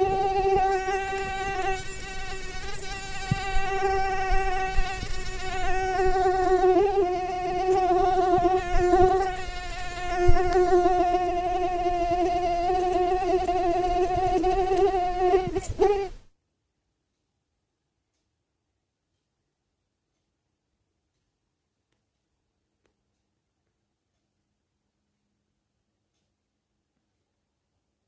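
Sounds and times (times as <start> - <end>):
mosquito wings whining: 0.0 - 16.2.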